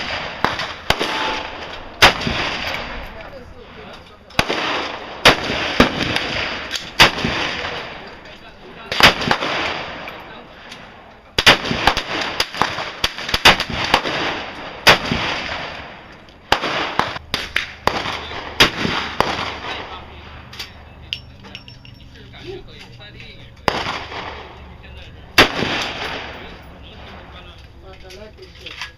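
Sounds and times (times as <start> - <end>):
gunshots ringing indoors: 0.0 - 3.0, 25.4 - 26.5.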